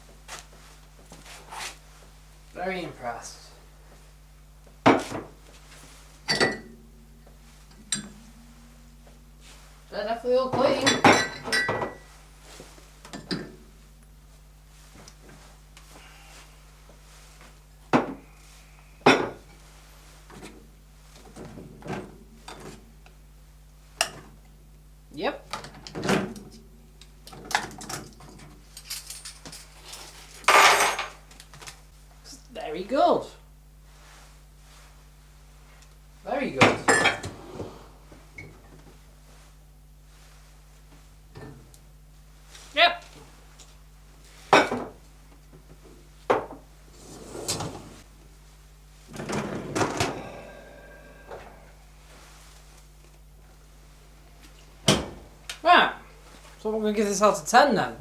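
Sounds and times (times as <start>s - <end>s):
dishes clinking and knocking: 6.2s - 7.0s, 7.7s - 9.3s, 10.6s - 12.1s, 13.1s - 13.6s, 19.1s - 19.5s, 30.5s - 31.2s, 36.6s - 37.4s, 44.6s - 45.0s
dishes clattering: 6.3s - 6.9s, 10.6s - 12.1s, 30.5s - 31.2s, 36.8s - 37.4s.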